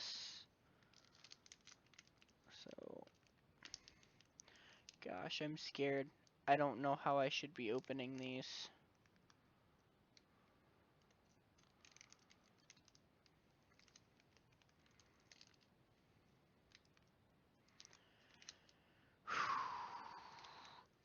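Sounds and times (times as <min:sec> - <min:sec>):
foil pack crinkling: 0:00.8 - 0:05.1, 0:13.7 - 0:15.7.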